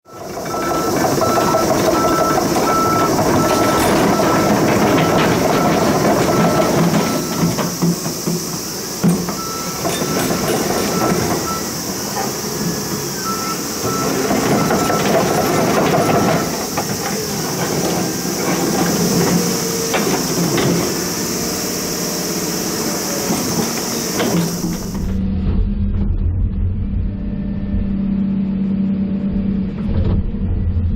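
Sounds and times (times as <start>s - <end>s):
warning alarm beeping: 0.0s - 24.9s
excavator engine and hydraulics: 0.0s - 30.9s.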